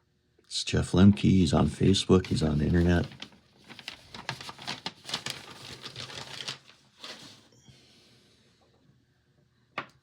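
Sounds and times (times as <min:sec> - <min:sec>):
clicks and packaging rustling: 0:02.3 - 0:07.4.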